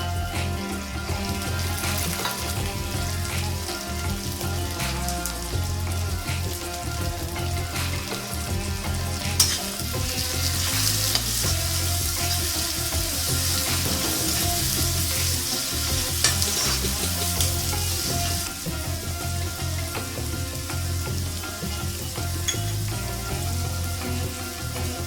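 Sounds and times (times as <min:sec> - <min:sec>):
food sizzling in oil: 0:00.0 - 0:25.0
utensil clinking against pan: 0:21.4 - 0:23.4.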